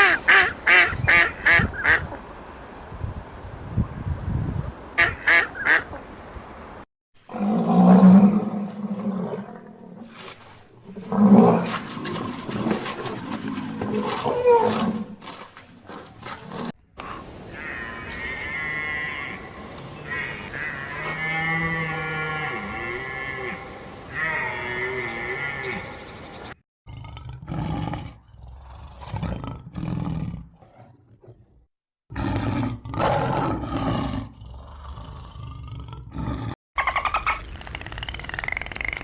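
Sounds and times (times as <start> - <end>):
animal calls: 0.0 - 6.8, 17.0 - 26.5.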